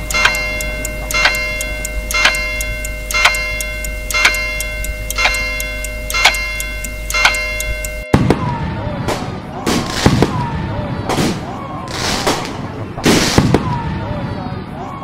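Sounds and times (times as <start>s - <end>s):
metallic clock ticks: 0.0s - 8.2s
low hum: 0.0s - 9.0s.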